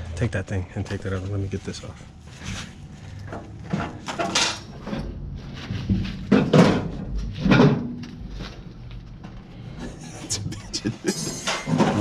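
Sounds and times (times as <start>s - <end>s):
metal parts rattling and clanking: 2.4s - 10.0s, 11.1s - 12.0s.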